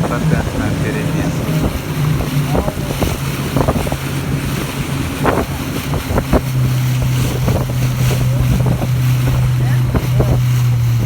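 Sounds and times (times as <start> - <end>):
boat motor running: 0.0 - 11.0
wind buffeting microphone: 0.0 - 11.0.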